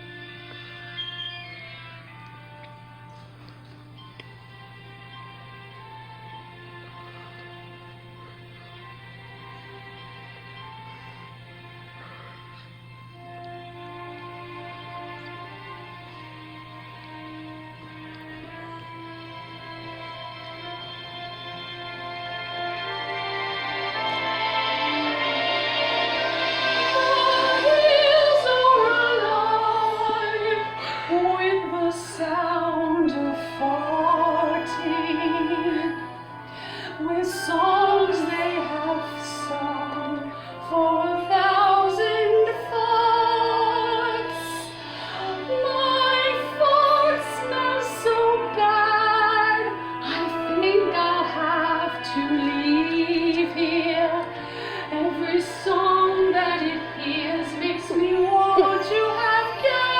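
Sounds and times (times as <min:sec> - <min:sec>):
sustained instrumental chords: 0:02.1 - 0:59.9
woman singing operatically: 0:22.4 - 0:59.9.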